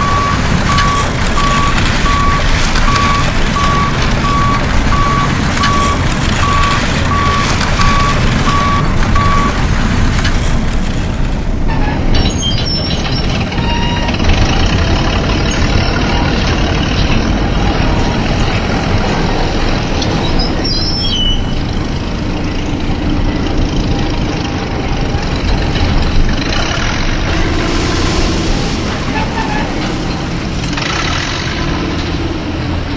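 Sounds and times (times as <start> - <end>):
reversing alarm beeping: 0.0 - 9.6
truck engine running: 0.0 - 32.9.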